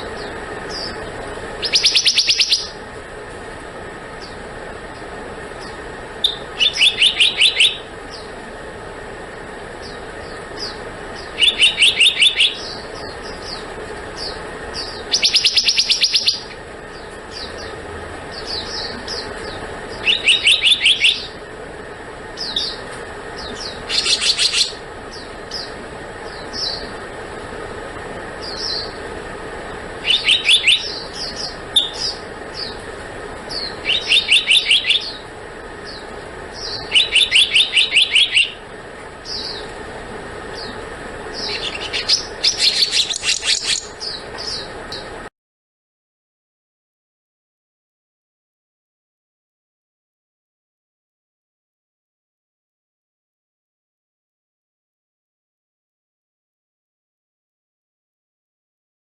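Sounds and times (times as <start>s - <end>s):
bird calling high notes: 0.0s - 2.8s, 5.6s - 8.4s, 9.8s - 21.4s, 23.5s - 25.8s, 30.0s - 32.8s, 33.5s - 39.7s, 40.5s - 45.1s.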